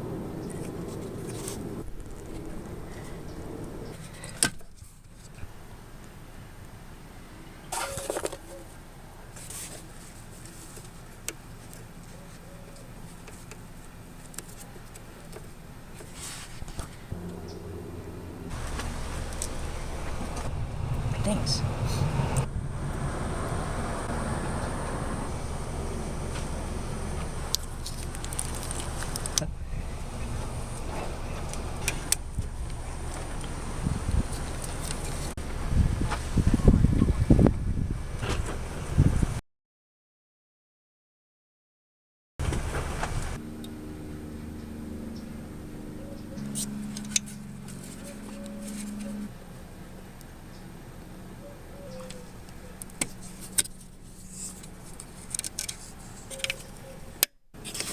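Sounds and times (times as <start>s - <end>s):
car engine running: 16.9s - 36.5s.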